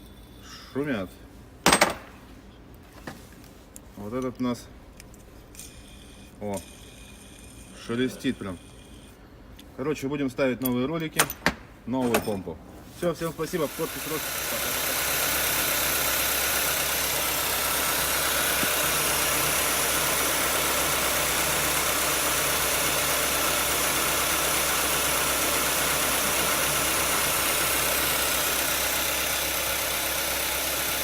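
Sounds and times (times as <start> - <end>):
car engine idling: 13.5 - 31.0.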